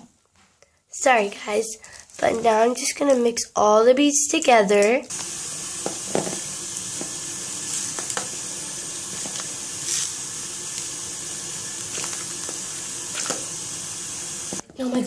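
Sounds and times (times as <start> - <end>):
steady high hiss: 5.1 - 14.6.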